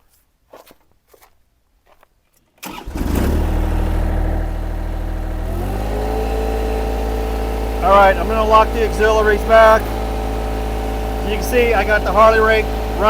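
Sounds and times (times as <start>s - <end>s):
small engine starting and running: 2.6s - 13.0s.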